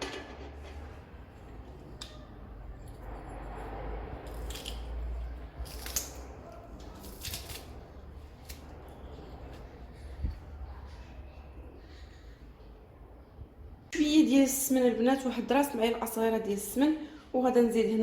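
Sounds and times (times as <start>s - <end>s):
knife clicking and scraping garlic: 4.2s - 7.7s.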